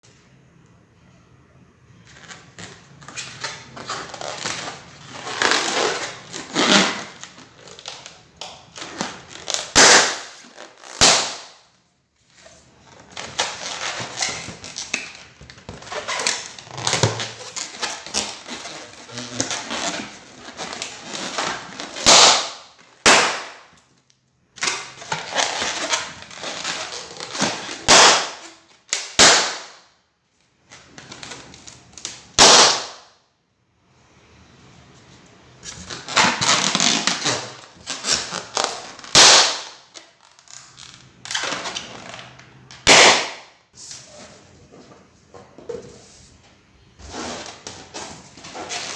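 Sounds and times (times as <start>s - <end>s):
balloons popping: 3.9s - 11.7s, 12.9s - 23.8s, 24.6s - 29.9s, 32.1s - 33.1s, 35.9s - 40.6s, 42.8s - 43.6s.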